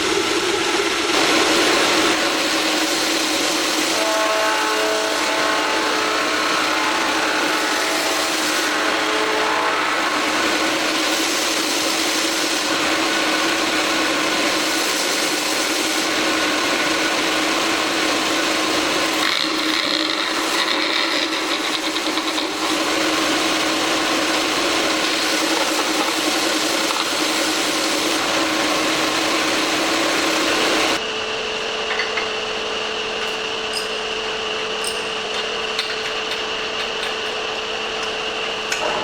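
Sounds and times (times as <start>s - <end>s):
sanding belt hissing on wood: 0.0s - 31.0s
sander motor hum: 0.0s - 39.0s.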